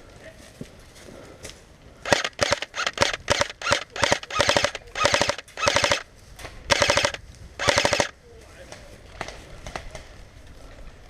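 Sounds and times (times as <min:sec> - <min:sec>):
airsoft guns firing bursts: 0:02.0 - 0:06.0, 0:06.7 - 0:08.2.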